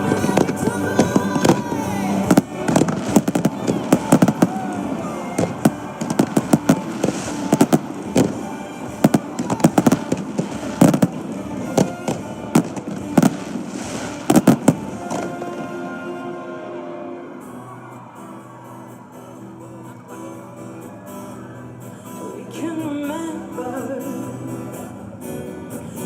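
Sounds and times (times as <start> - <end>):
fireworks bangs and crackles: 0.0 - 16.2
song playing: 0.0 - 21.0.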